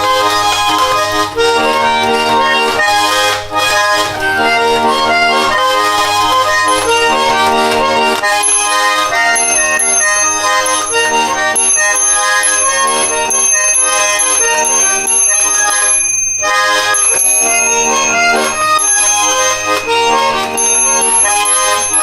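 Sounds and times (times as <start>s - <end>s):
button accordion playing chords: 0.0s - 22.0s
small bells ringing: 6.2s - 22.0s.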